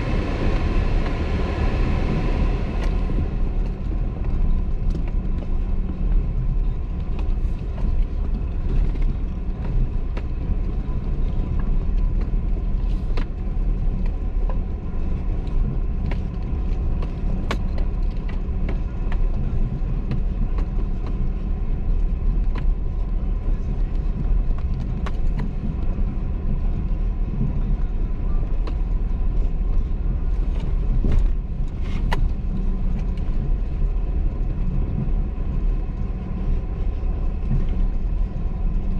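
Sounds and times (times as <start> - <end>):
off-road vehicle engine rumble: 0.0 - 38.9.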